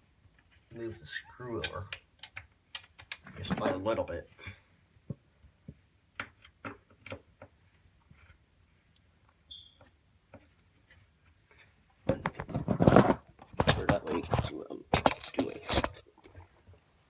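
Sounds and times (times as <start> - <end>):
brief high squeak: 9.5 - 9.8.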